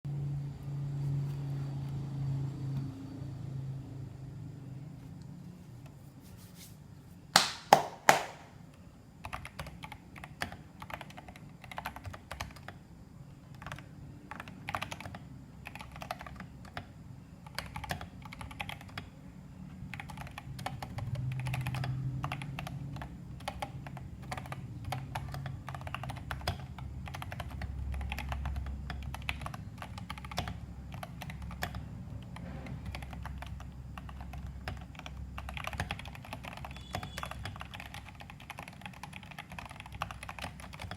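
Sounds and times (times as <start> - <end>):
mechanical keyboard typing: 9.2 - 12.8, 13.5 - 19.1, 19.9 - 40.9.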